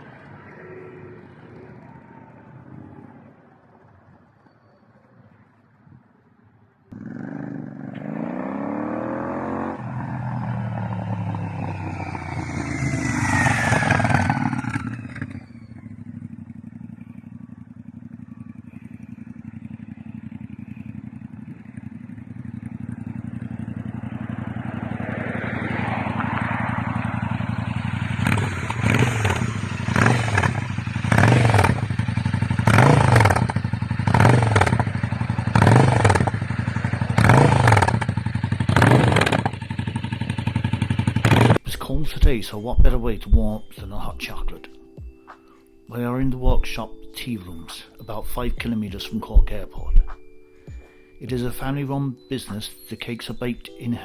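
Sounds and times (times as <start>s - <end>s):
motorcycle engine revving: 6.9s - 41.7s
motorcycle engine idling: 14.0s - 41.6s
throttle blips: 41.8s - 54.0s.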